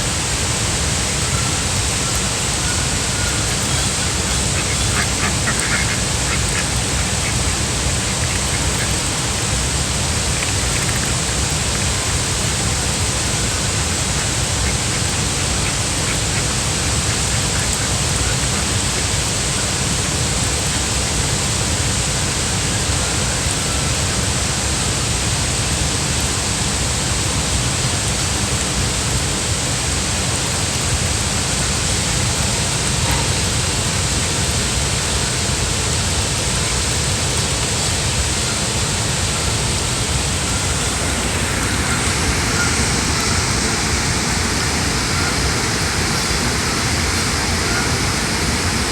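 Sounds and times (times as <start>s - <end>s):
rushing water: 0.0s - 48.9s
ducks quacking: 1.0s - 20.9s, 32.8s - 33.6s, 38.3s - 48.9s.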